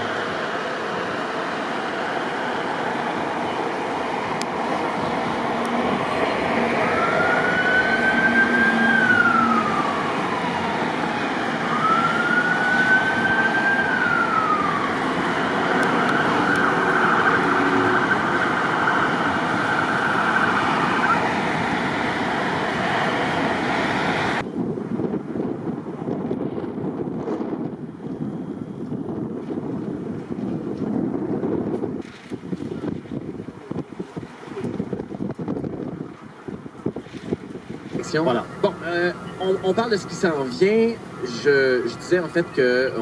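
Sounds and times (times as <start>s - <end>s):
emergency vehicle siren wailing: 0.0s - 24.5s, 38.0s - 43.0s
wind and road noise: 0.0s - 43.0s.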